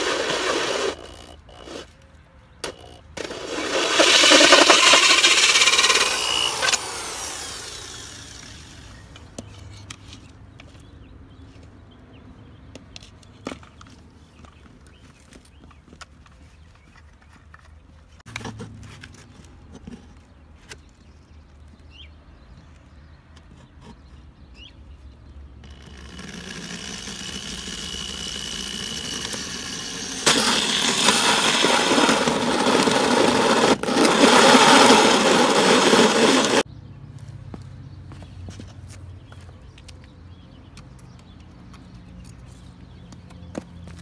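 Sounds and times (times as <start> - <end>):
power tool running: 2.6 - 9.1, 25.6 - 36.6.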